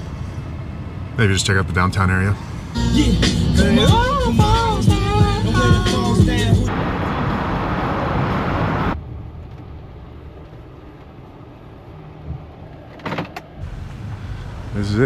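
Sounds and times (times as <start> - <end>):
vehicle traffic rumble: 0.0 - 15.0
loud rushing noise: 6.1 - 9.0.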